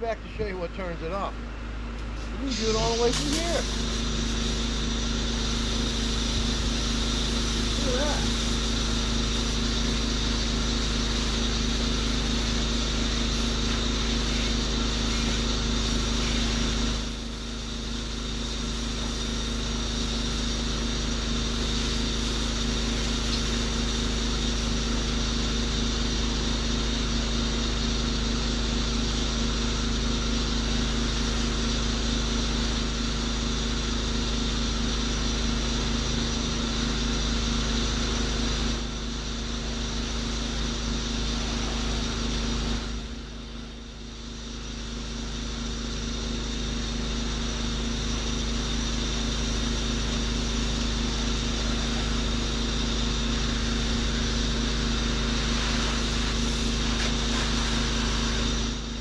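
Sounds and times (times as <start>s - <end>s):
pressure washer engine and pump: 0.0s - 59.0s
wand spraying: 2.0s - 17.3s, 55.3s - 58.8s.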